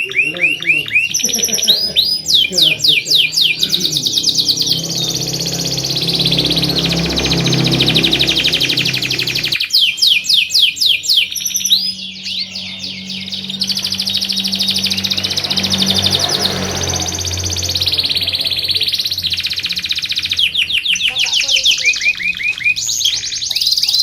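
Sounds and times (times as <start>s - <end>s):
canary singing trills: 0.0s - 24.0s.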